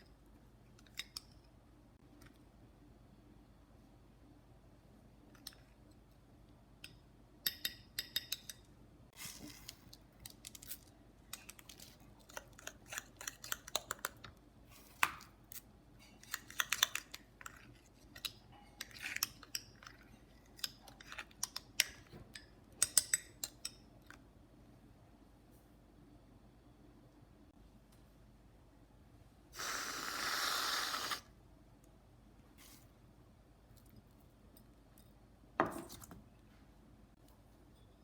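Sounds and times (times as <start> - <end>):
cutlery clinking against a mug: 7.5 - 8.6.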